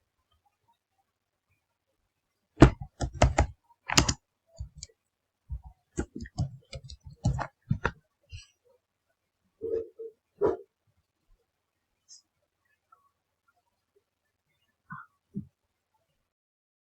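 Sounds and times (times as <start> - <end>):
computer keyboard keys clicking: 2.6 - 4.9, 6.0 - 7.9.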